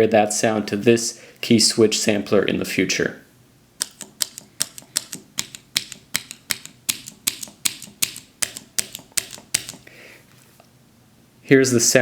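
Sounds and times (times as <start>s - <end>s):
mechanical keyboard switches clicking: 3.8s - 9.8s.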